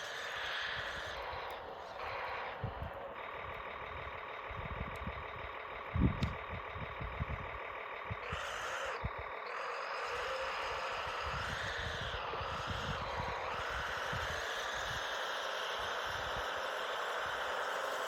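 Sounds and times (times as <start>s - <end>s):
toy vehicle motor whine: 0.0s - 3.2s, 8.1s - 18.0s.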